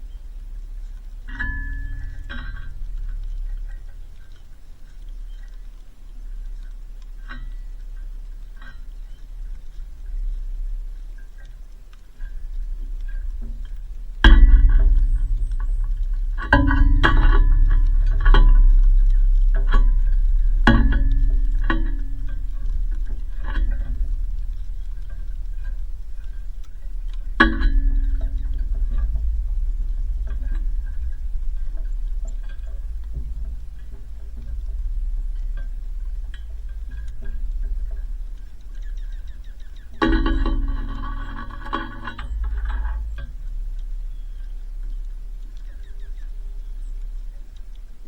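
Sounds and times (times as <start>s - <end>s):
low bass: 0.0s - 48.0s
small birds chipping: 0.0s - 48.0s
steady low rumble: 0.0s - 48.0s
plucked guitar notes: 12.3s - 48.0s.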